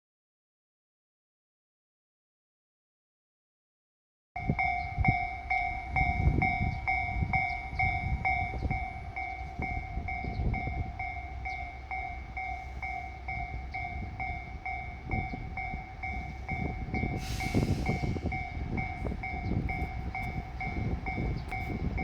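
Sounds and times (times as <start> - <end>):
level crossing bell ringing: 4.4 - 17.4
diesel railcar rumble: 4.4 - 22.0.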